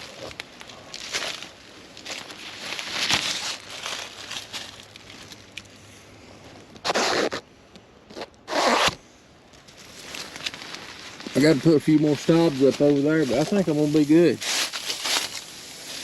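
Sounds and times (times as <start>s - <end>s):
tent zipper pulled: 6.8s - 7.4s, 8.2s - 9.0s.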